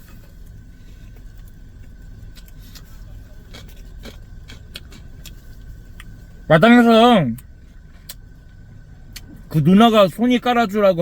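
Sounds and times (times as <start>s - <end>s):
car engine rumble inside cabin: 0.0s - 11.0s
faint steady whine: 0.0s - 11.0s.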